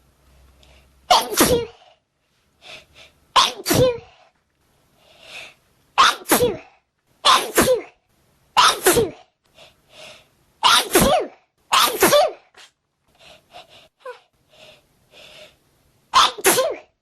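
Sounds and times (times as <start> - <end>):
faint breaths: 0.2 - 1.1, 1.7 - 3.3, 4.1 - 5.7, 9.4 - 10.4, 12.6 - 15.8
person sneezing: 1.1 - 1.9, 3.4 - 4.2, 6.0 - 8.0, 8.6 - 9.3, 10.6 - 12.8, 16.2 - 17.0.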